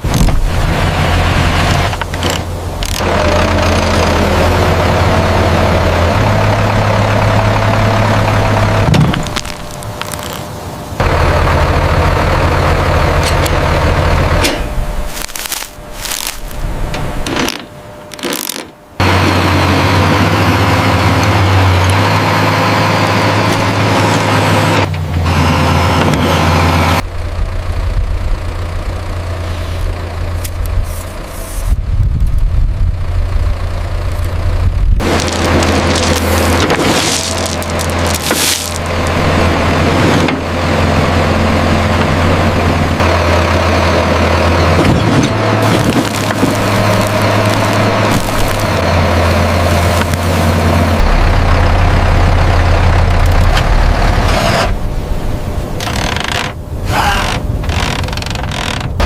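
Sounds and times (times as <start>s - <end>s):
engine stopping thud: 0.0s - 0.6s
diesel engine idling: 0.0s - 18.2s, 18.8s - 55.8s.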